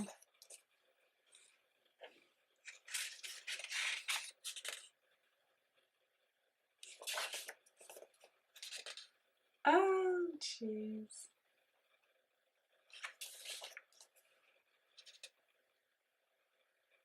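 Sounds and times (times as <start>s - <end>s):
paper rustling of turned pages: 0.0s - 5.0s, 6.8s - 9.2s, 12.9s - 15.4s.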